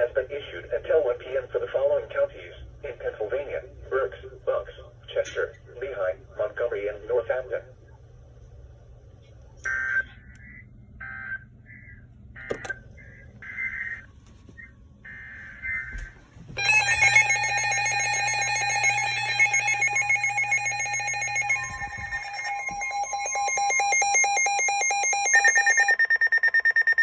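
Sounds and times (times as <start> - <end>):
multi-tone pulsing weather alarm: 9.6 - 27.0
rapid even beeping: 9.7 - 27.0.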